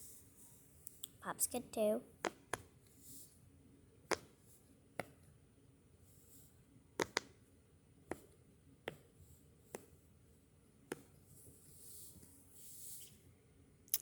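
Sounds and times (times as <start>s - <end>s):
pop-it toy bubbles popping: 7.0s - 7.3s.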